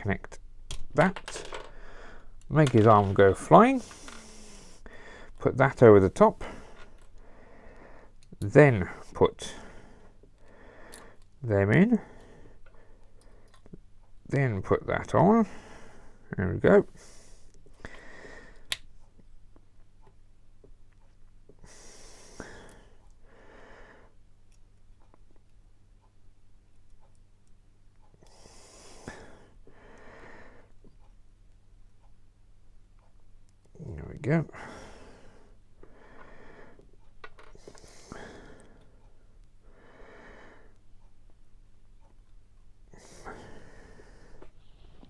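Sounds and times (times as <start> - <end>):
small plastic clicks: 0.7 - 4.6
person breathing close to microphone: 1.4 - 5.4, 6.0 - 8.2, 34.5 - 40.8, 42.9 - 45.0.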